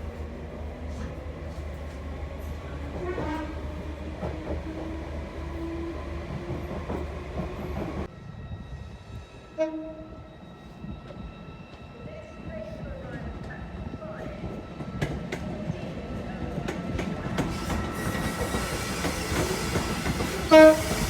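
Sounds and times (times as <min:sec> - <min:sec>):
train rumbling on track: 0:00.0 - 0:21.0
train horn: 0:03.0 - 0:03.6, 0:09.5 - 0:10.3, 0:20.3 - 0:21.0.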